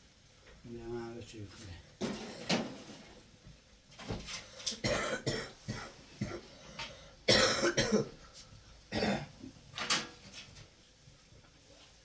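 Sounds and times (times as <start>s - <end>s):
harsh coughs: 4.8s - 6.5s, 7.3s - 8.2s, 8.9s - 9.4s.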